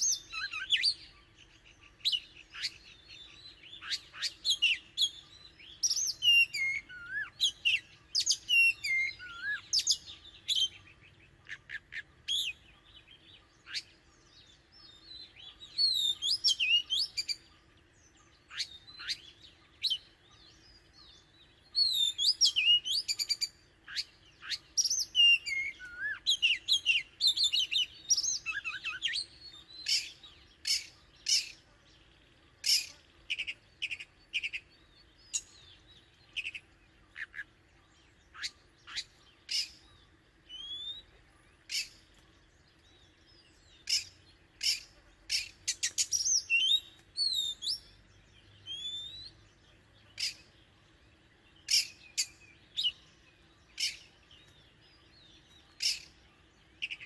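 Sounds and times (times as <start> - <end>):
bird singing whistles: 0.0 - 1.2, 1.9 - 12.6, 14.9 - 17.4, 21.7 - 31.5, 38.3 - 42.0, 43.5 - 48.0, 48.6 - 49.5.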